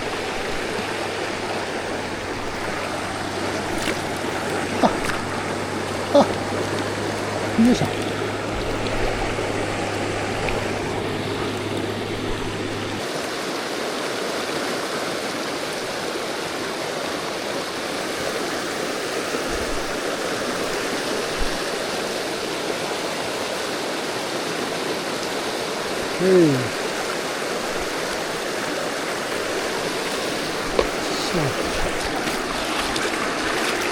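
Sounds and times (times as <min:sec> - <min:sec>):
low steady hum: 0:00.0 - 0:13.0
river water rushing: 0:00.0 - 0:33.9.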